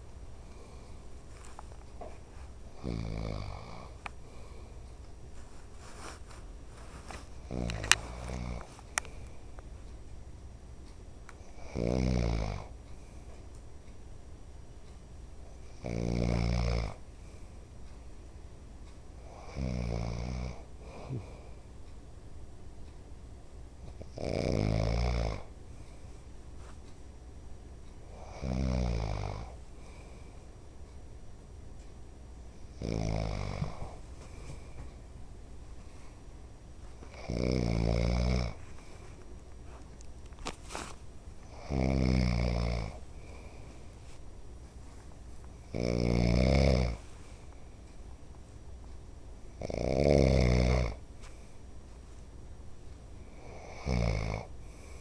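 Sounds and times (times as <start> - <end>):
quiet breathing: 0.0 - 10.4, 11.3 - 13.7, 15.3 - 22.9, 23.8 - 27.2, 27.8 - 31.1, 32.4 - 55.0
man snoring: 2.8 - 4.0, 7.5 - 8.7, 11.6 - 12.7, 15.8 - 17.0, 19.3 - 21.4, 24.1 - 25.5, 28.2 - 29.6, 32.7 - 34.0, 37.1 - 38.6, 41.5 - 43.4, 45.7 - 47.0, 49.6 - 51.0, 53.3 - 54.5.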